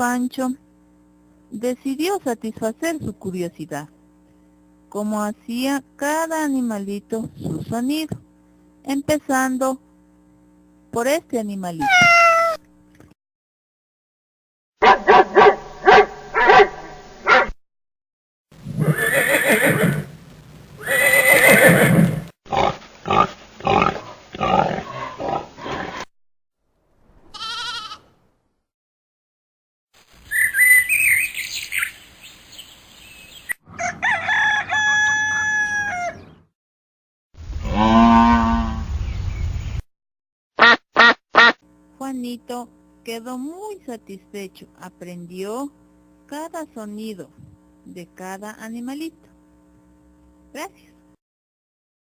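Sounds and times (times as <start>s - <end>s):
farm animal calls: 11.8s - 12.6s, 33.7s - 36.4s.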